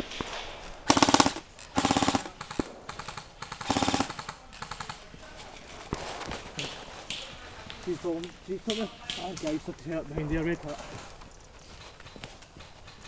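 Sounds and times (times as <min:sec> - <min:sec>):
airsoft gun firing bursts: 0:00.9 - 0:05.3.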